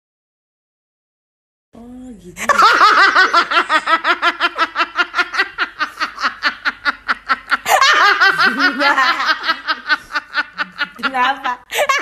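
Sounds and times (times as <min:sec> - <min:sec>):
person laughing hard: 0:02.4 - 0:12.0.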